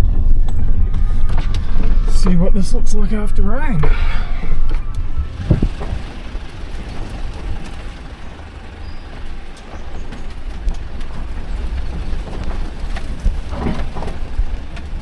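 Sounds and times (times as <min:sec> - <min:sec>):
engine and tyre rumble: 0:00.0 - 0:15.0.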